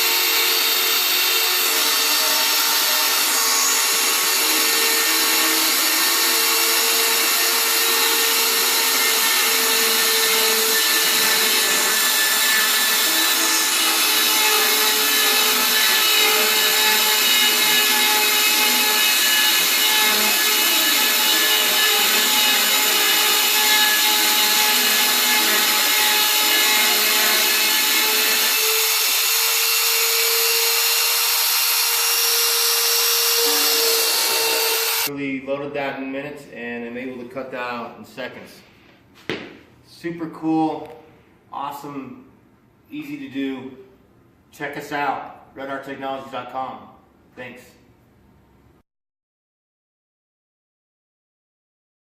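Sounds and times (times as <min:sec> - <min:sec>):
cutter working material: 0:00.0 - 0:35.1
router spindle whine: 0:12.9 - 0:35.1.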